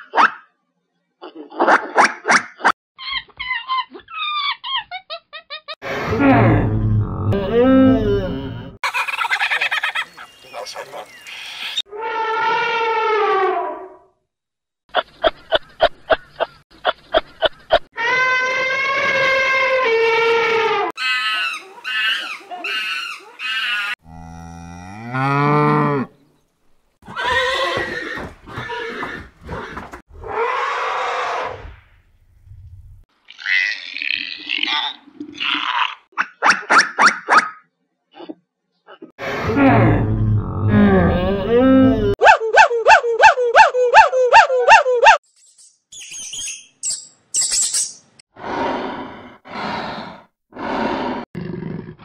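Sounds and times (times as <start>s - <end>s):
cow mooing: 24.0s - 26.1s
animal yelping: 41.5s - 45.2s.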